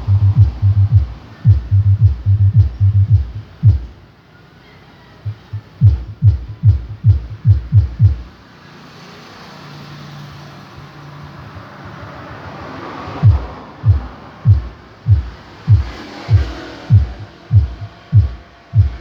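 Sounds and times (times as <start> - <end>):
rising noise sweep: 0.0 - 3.8
deep kick drum thumps: 0.0 - 3.9, 5.3 - 8.3, 13.2 - 19.0.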